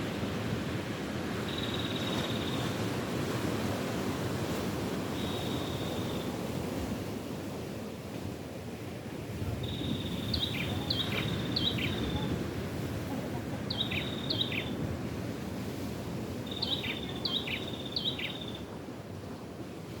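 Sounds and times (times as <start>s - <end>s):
surf and wind rushing: 0.0s - 20.0s
bird calling: 9.6s - 12.4s, 13.1s - 14.8s, 16.5s - 18.6s.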